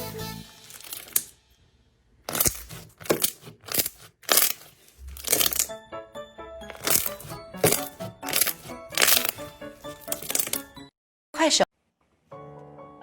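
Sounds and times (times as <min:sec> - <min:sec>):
light background music: 0:05.0 - 0:10.9
slime crackling pops: 0:06.7 - 0:10.6.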